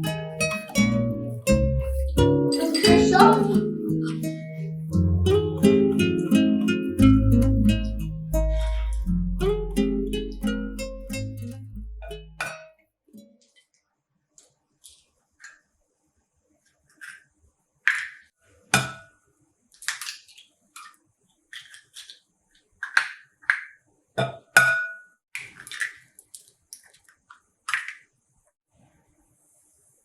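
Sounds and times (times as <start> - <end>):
dishes and utensils clinking: 2.0 - 4.3.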